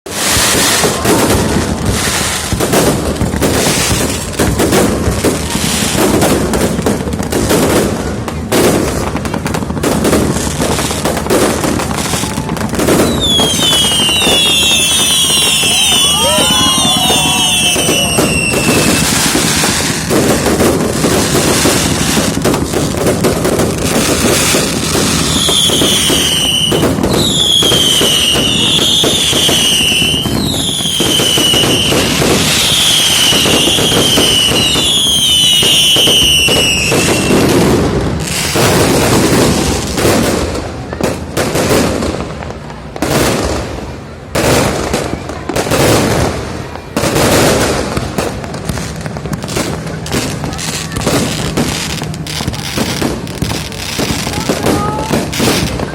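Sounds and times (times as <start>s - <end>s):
fireworks bangs and crackling: 0.0s - 55.9s
falling firework whistles: 0.1s - 6.6s, 9.8s - 40.4s.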